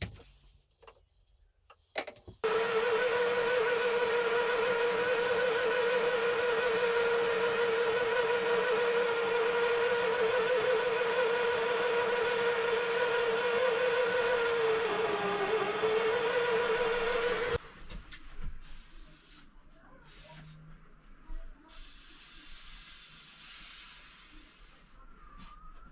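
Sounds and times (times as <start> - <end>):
small electric motor whining: 2.4 - 17.6.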